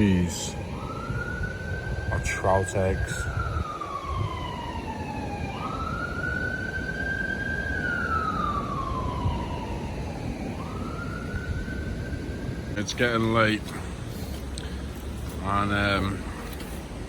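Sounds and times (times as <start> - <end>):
emergency vehicle siren wailing: 0.0 - 17.0.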